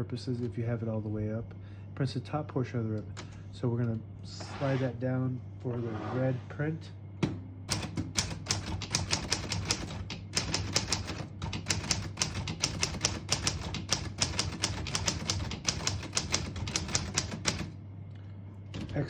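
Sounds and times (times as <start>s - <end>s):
typewriter key strikes: 7.7s - 17.7s.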